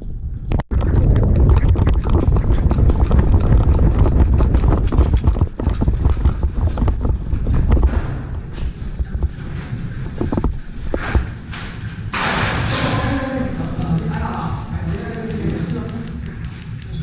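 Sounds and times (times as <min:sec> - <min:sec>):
wind buffeting microphone: 0:00.0 - 0:17.0
quick footsteps: 0:01.0 - 0:12.5.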